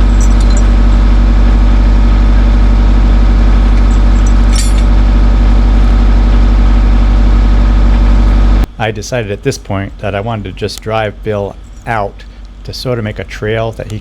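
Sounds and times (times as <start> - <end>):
metallic clink: 0.0 - 0.8, 3.7 - 5.0
skid steer engine running: 0.0 - 8.7.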